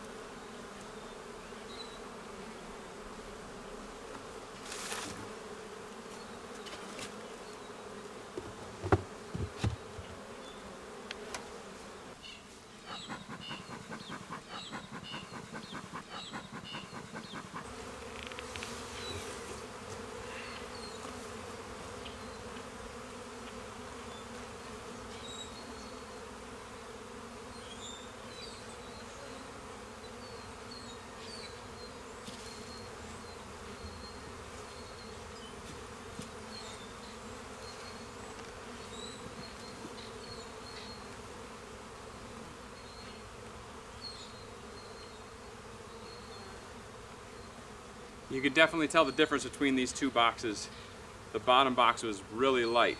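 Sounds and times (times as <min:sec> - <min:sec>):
bees humming: 0:00.0 - 0:52.9
sharp knocks: 0:08.4 - 0:10.2.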